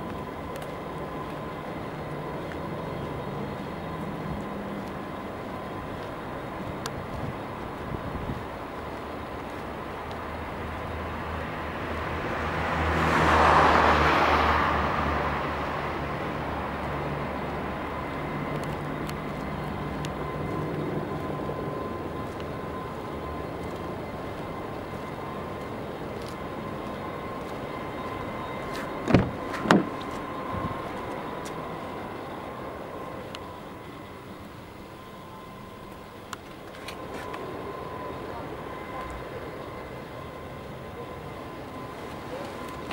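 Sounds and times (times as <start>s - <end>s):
low mechanical hum: 0.0s - 13.4s, 14.6s - 42.9s
vehicle passing: 10.4s - 33.3s.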